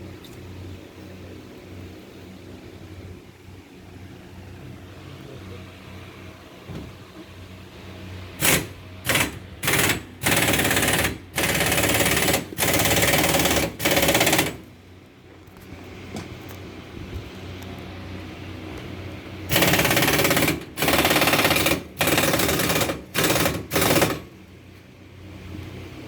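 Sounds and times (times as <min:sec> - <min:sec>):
power tool running in bursts: 0:08.4 - 0:14.7, 0:19.5 - 0:24.3.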